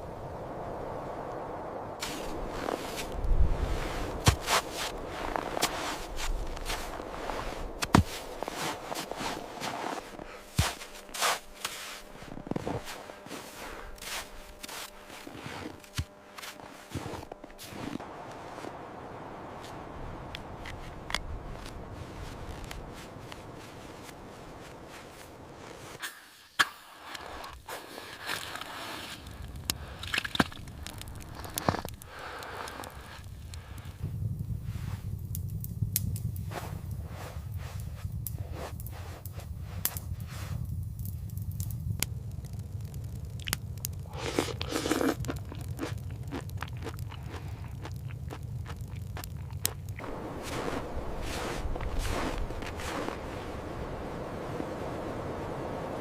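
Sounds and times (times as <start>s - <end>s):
steady low rumble: 0.0s - 25.9s, 29.2s - 56.0s
steady rushing noise: 0.0s - 26.0s, 49.7s - 56.0s
light crackling: 0.0s - 56.0s.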